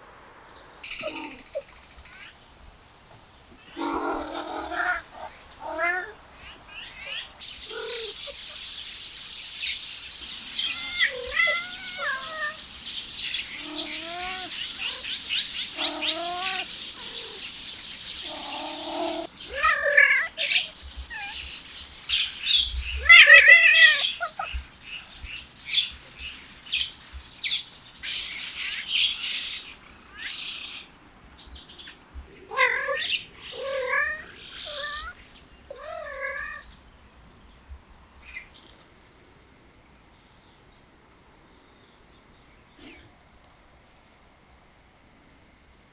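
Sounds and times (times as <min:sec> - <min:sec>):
cats meowing: 0:03.6 - 0:08.7, 0:10.2 - 0:12.6, 0:13.2 - 0:17.6, 0:18.2 - 0:21.7, 0:22.9 - 0:24.7, 0:31.8 - 0:36.7.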